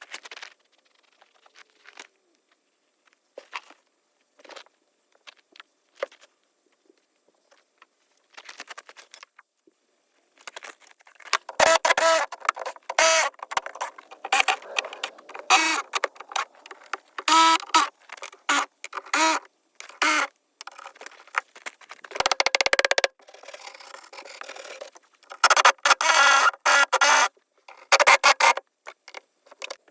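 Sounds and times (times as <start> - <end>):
faint clicks: 11.4 - 20.8
loud high-pitched squeaks: 11.5 - 19.4.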